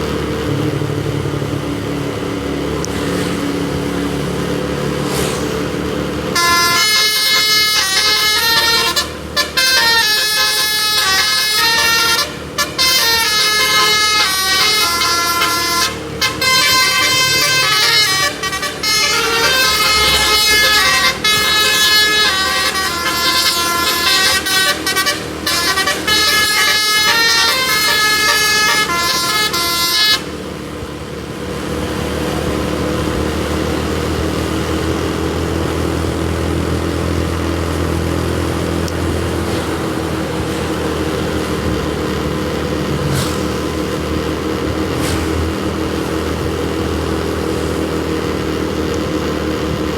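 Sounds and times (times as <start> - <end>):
low engine and road drone: 0.0 - 49.9
musical air horn melody: 6.3 - 30.5.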